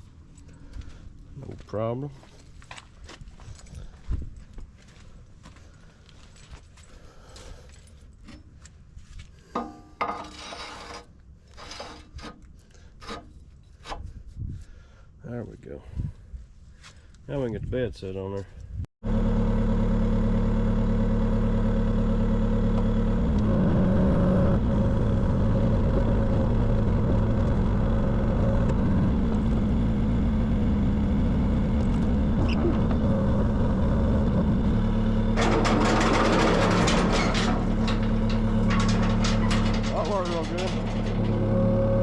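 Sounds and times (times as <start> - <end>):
lifting machine engine running: 22.9 - 42.0
rattling and clanking: 35.2 - 42.0.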